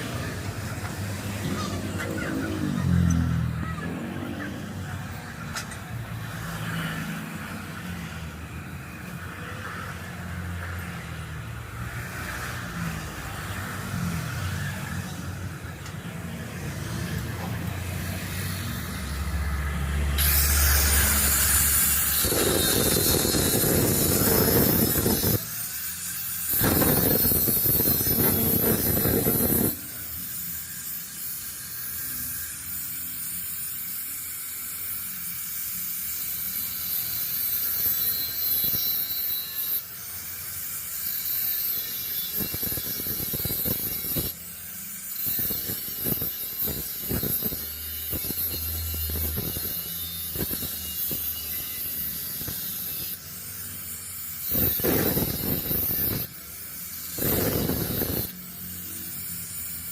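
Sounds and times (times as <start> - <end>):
power tool motor whine: 16.6 - 33.2, 36.4 - 59.9.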